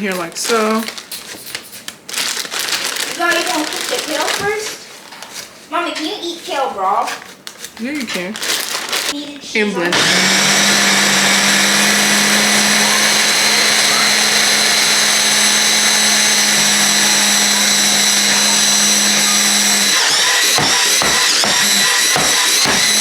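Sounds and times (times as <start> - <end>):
blender running: 9.8 - 23.0.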